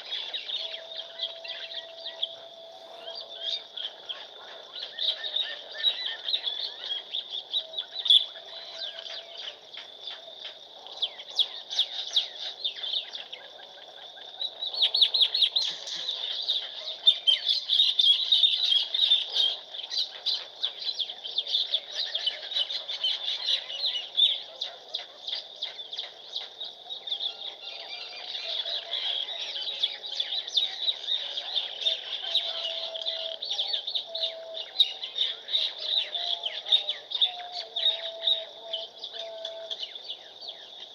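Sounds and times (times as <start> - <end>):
small birds chirping: 0.0 - 40.9.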